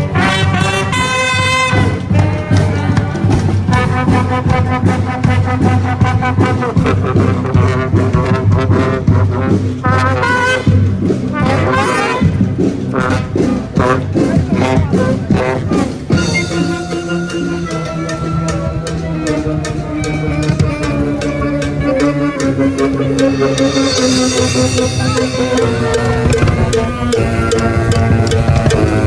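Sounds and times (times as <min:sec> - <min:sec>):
brass band playing: 0:00.0 - 0:29.0
drum beat: 0:00.2 - 0:16.4, 0:23.4 - 0:29.0.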